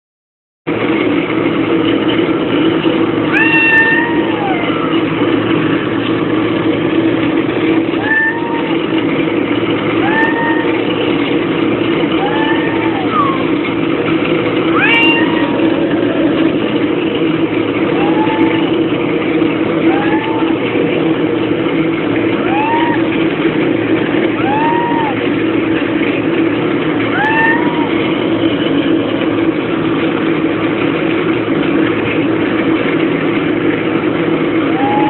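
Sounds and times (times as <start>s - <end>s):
loud low hum: 0.7s - 35.0s
cat meowing: 3.3s - 5.2s, 7.9s - 8.9s, 10.0s - 10.9s, 12.1s - 13.6s, 14.7s - 15.9s, 17.9s - 18.7s, 19.8s - 20.6s, 22.4s - 23.2s, 24.4s - 25.2s, 27.1s - 28.2s, 34.7s - 35.0s.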